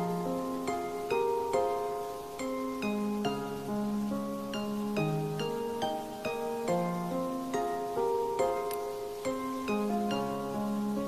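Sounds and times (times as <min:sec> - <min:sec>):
gentle plucked harp-like music: 0:00.0 - 0:11.0.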